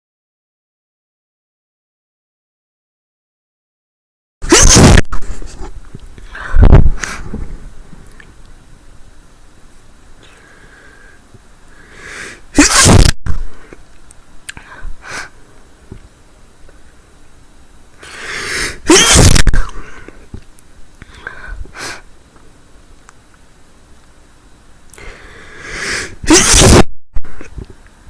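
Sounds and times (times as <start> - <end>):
woman sneezing: 4.4 - 5.1, 12.5 - 13.1, 18.4 - 19.8, 25.7 - 26.9
rising in-breath: 6.2 - 7.7, 10.2 - 12.5, 18.0 - 18.8, 24.9 - 26.2.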